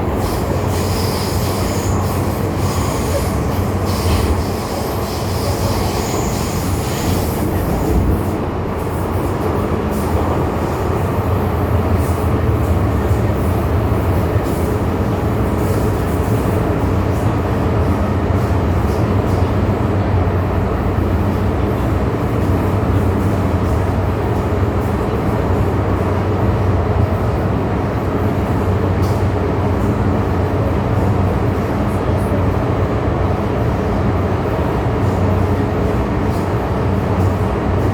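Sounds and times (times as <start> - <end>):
train wheels rumbling on rail: 0.0 - 37.9
faint high wheel squeal: 0.2 - 7.2.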